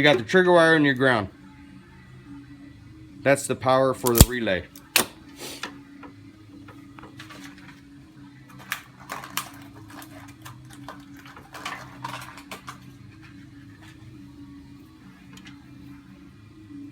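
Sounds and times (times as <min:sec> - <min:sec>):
small parts clicking and tapping: 0:04.1 - 0:05.0.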